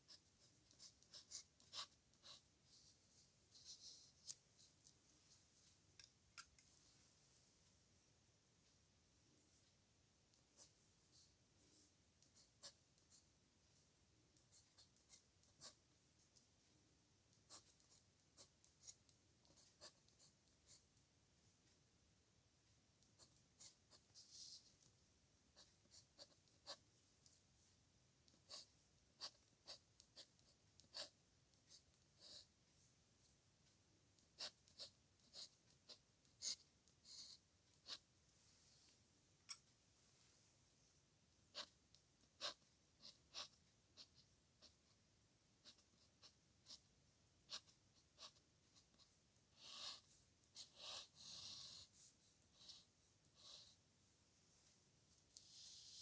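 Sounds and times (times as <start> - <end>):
pen scratching on paper: 0.0 - 4.4, 10.6 - 13.3, 14.4 - 15.9, 17.4 - 20.9, 25.6 - 26.9, 28.3 - 32.5, 34.2 - 38.1, 41.5 - 45.0, 45.6 - 53.8.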